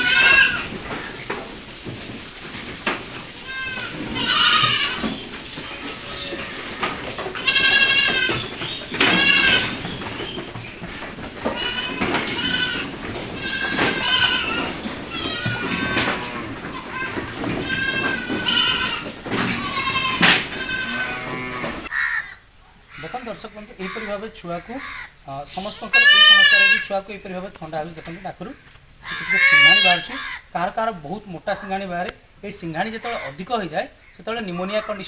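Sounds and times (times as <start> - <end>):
goats bleating: 0.0 - 22.0, 24.8 - 27.0, 29.0 - 30.3.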